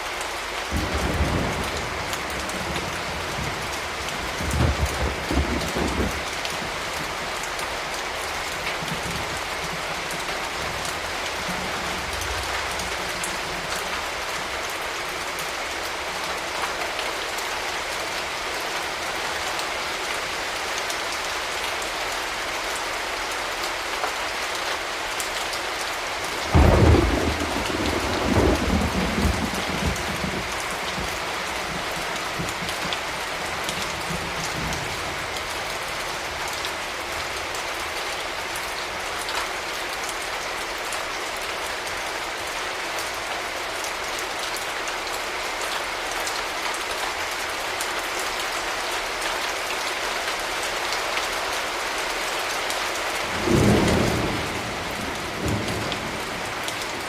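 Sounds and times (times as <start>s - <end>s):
steady rain falling: 0.0s - 57.0s
thunder rumbling: 0.7s - 6.8s, 26.5s - 35.1s, 53.3s - 57.0s.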